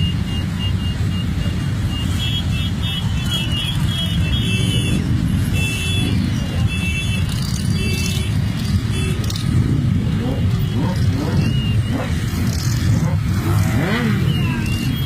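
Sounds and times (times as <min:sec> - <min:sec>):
motorcycles rumbling: 0:00.0 - 0:15.0.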